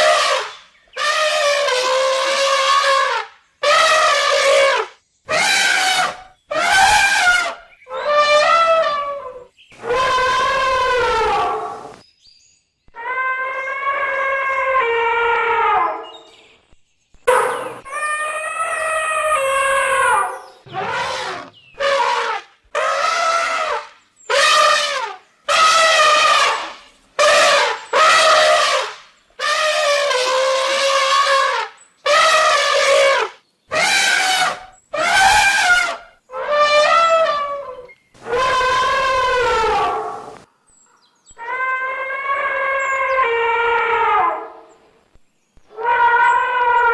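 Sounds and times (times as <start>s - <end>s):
elephant trumpeting: 0.0s - 12.0s, 17.3s - 40.5s, 45.7s - 46.9s.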